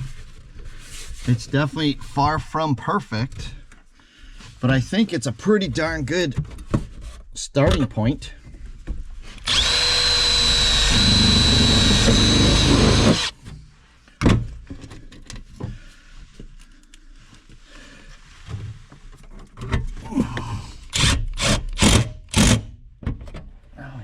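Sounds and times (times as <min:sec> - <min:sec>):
power drill whining: 0:09.4 - 0:13.4.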